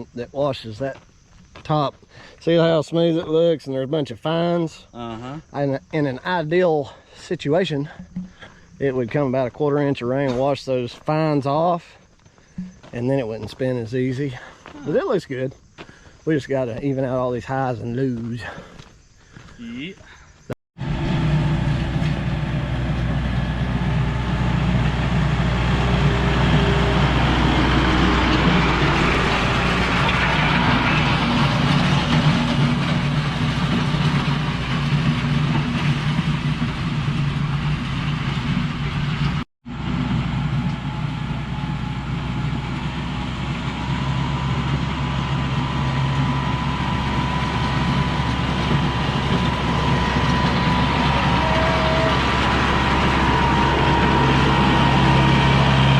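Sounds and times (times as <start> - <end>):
gravel rumble: 0.0 - 55.9
heavy machinery engine running: 20.8 - 55.9.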